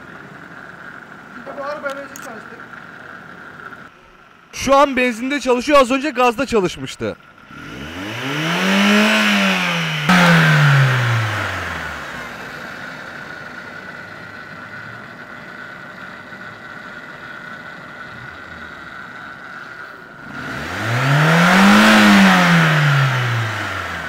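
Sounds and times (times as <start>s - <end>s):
car engine revving and idling: 0.0s - 4.8s, 7.2s - 24.0s
high whine: 7.6s - 14.8s.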